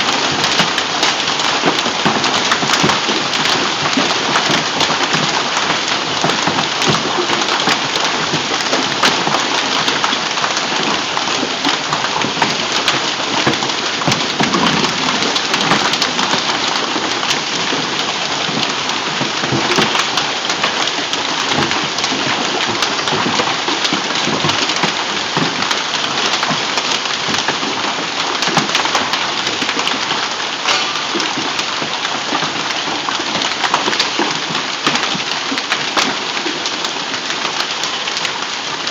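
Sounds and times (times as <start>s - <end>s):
hail and rain pelting down: 0.0s - 38.9s.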